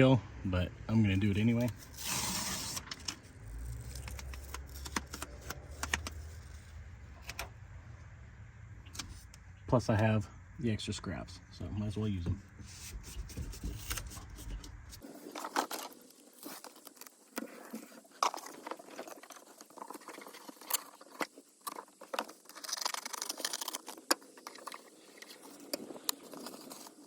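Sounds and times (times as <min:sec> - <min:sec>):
mat crinkling and scraping: 0:12.3 - 0:27.0.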